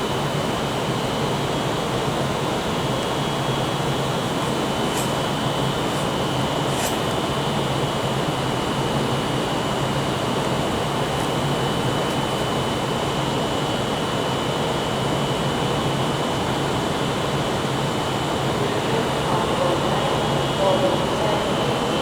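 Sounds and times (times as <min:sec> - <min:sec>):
train humming: 0:02.1 - 0:07.9.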